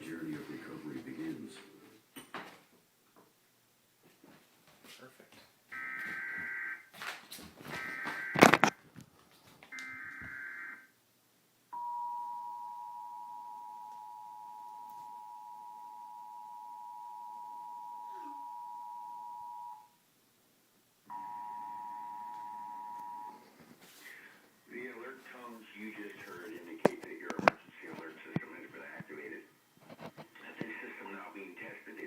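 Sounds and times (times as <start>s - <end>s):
two-tone alert signal: 11.8s - 19.8s, 21.1s - 23.4s.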